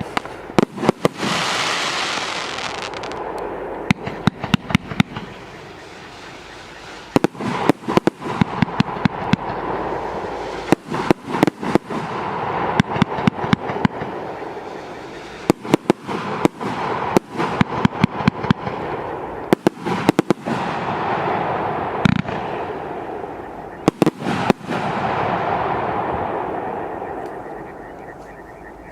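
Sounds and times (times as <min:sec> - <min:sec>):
firework hiss: 0:00.0 - 0:03.4, 0:04.1 - 0:23.2
firework cake firing sharp shots: 0:19.5 - 0:21.4, 0:23.9 - 0:25.7.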